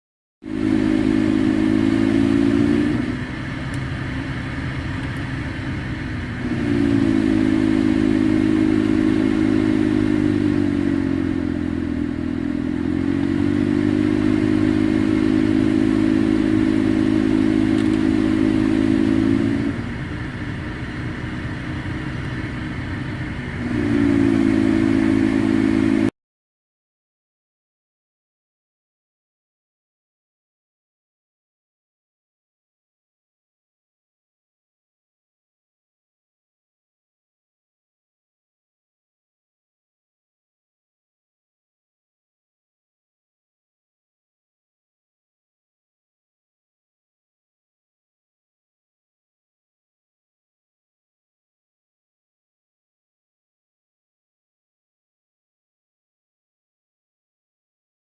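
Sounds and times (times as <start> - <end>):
blower motor rushing air: 0.4 - 26.1
loud droning hum: 0.4 - 26.1.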